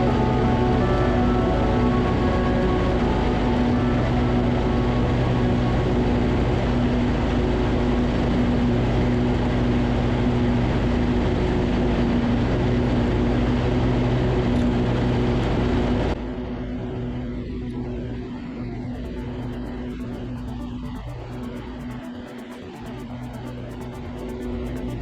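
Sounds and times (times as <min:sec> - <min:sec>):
lawn tractor engine humming: 0:19.0 - 0:25.0.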